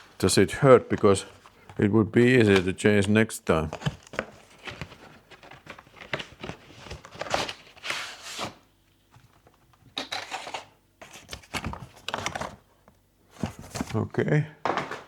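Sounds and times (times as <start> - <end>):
package rustling and crinkling: 0.1 - 2.6, 3.6 - 12.7.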